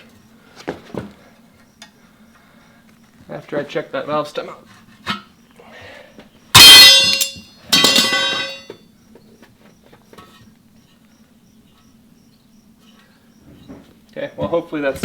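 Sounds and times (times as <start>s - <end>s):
metal clangs on steel wheel rim: 6.5s - 8.8s.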